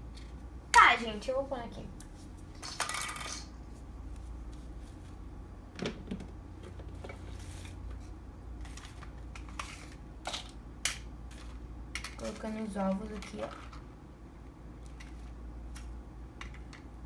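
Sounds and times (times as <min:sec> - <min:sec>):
refrigerator low hum: 0:00.0 - 0:17.0
groceries clicking and knocking: 0:05.7 - 0:08.0, 0:08.6 - 0:13.9, 0:14.8 - 0:17.0.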